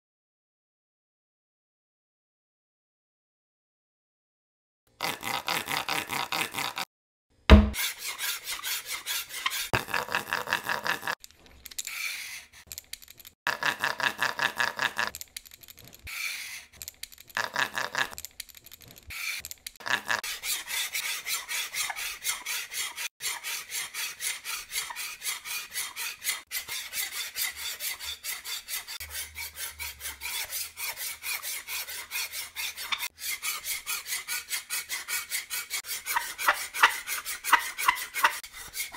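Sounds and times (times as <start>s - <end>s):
sharp thump: 7.5s - 7.8s
hand tool rasping on wood: 7.8s - 9.8s, 20.1s - 38.9s.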